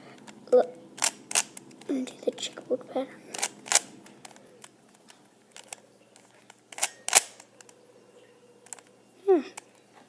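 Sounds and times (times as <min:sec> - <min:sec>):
speed cube clicking and clacking: 0:01.0 - 0:01.9, 0:03.3 - 0:04.4, 0:06.7 - 0:07.5.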